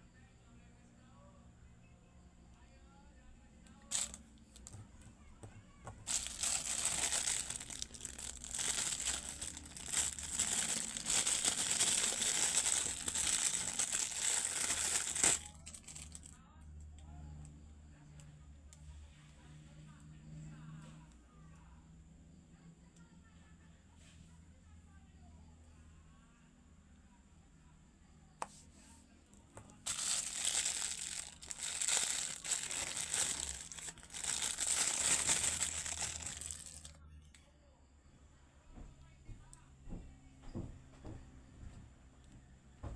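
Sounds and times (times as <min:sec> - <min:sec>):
packaging crinkling: 0:03.9 - 0:04.8, 0:05.9 - 0:16.4, 0:29.8 - 0:37.0.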